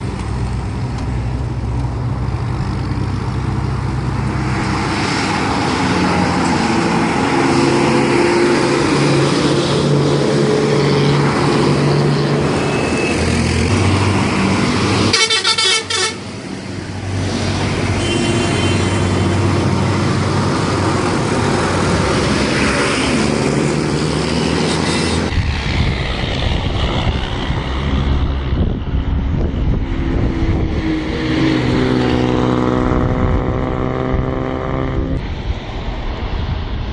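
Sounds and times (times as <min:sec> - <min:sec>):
diesel bus engines running: 0:00.0 - 0:36.9
bus horn blasts: 0:15.0 - 0:16.3, 0:18.0 - 0:19.2.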